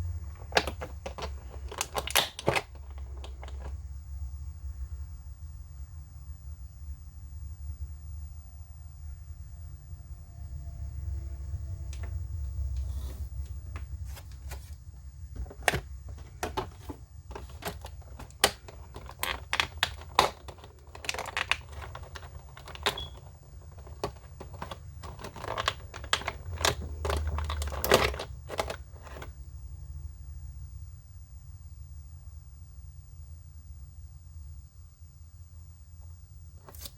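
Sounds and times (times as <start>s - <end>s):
plastic packaging clicks and rustles: 0.2s - 3.8s, 13.7s - 14.8s, 15.4s - 29.3s.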